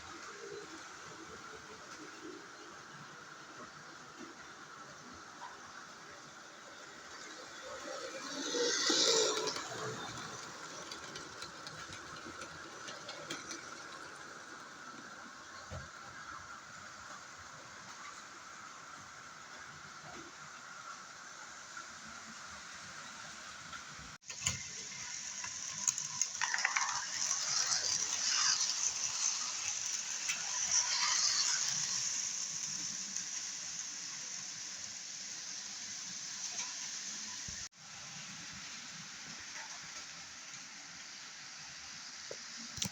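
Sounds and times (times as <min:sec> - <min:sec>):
wheels on rails: 0:00.0 - 0:42.9
model train motor whine: 0:06.2 - 0:15.1, 0:23.0 - 0:37.7.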